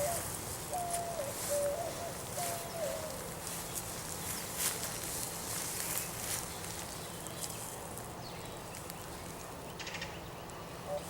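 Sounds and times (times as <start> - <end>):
rustling: 0.0 - 8.1
footsteps on leaves: 0.0 - 9.4.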